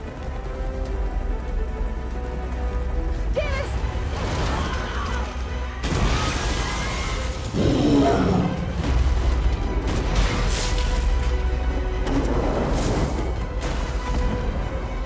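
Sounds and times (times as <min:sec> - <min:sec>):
action film music: 0:00.0 - 0:15.0
crashes and booms of destruction: 0:03.3 - 0:15.0.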